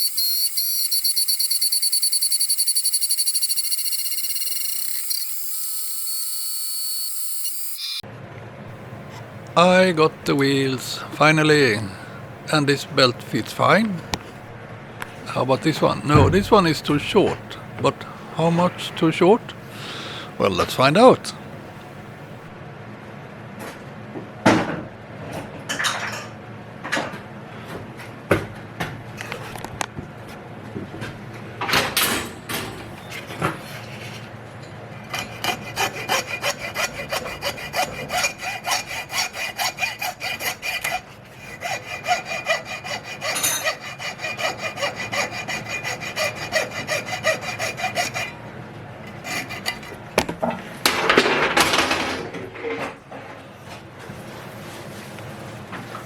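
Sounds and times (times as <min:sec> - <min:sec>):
hand tool rasping metal: 0:00.0 - 0:07.8, 0:15.1 - 0:18.1, 0:35.1 - 0:48.3.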